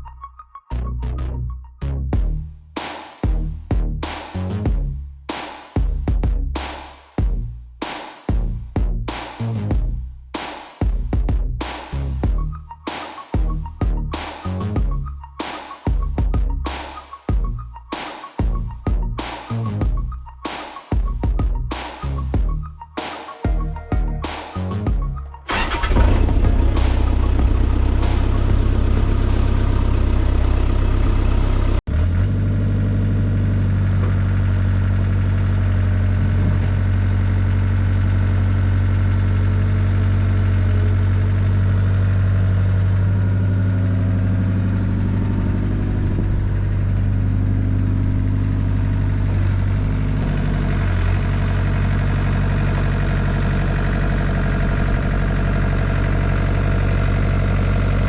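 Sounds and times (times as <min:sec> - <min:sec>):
excavator diesel engine running: 0:23.4 - 0:58.0.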